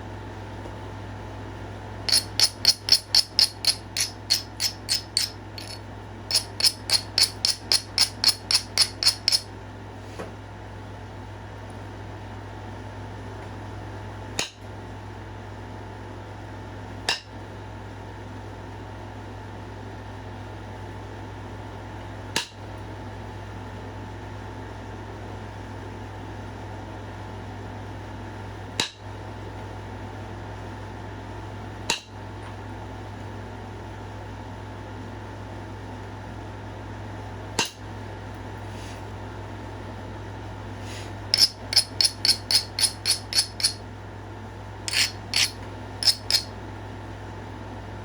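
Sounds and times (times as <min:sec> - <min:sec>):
steady low hum: 0:00.0 - 0:12.4, 0:37.2 - 0:48.0.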